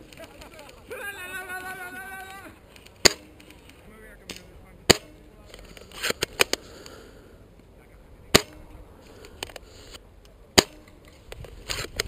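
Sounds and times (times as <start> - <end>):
airsoft gun shots: 3.0 - 3.5, 8.3 - 8.6, 10.6 - 11.0.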